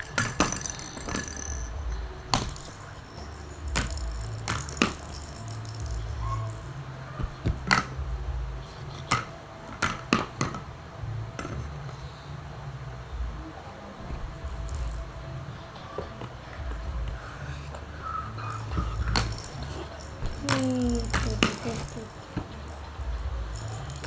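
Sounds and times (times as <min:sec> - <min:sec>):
plastic toy car clicks and rattles: 0:00.0 - 0:01.7.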